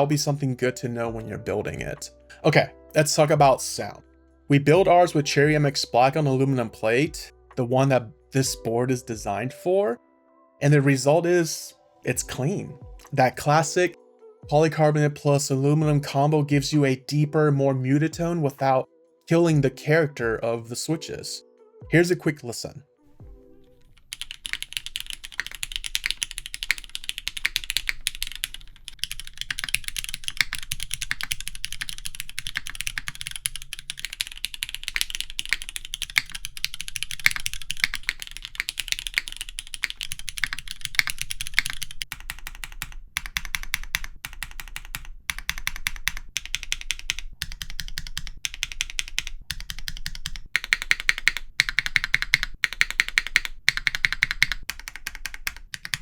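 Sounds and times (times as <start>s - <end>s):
typing on mechanical keyboard: 23.7s - 56.0s.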